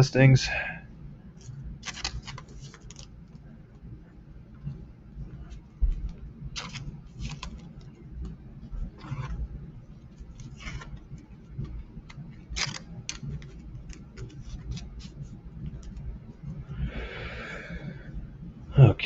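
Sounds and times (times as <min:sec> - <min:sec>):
cards clicking and tapping: 0:01.8 - 0:03.1, 0:06.0 - 0:08.4, 0:10.3 - 0:16.1.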